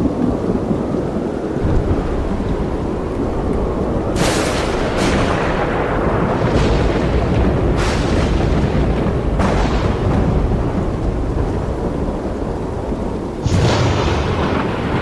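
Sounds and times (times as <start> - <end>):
deep thunder rumble: 0.0 - 15.0
thunder cracks: 1.5 - 15.0.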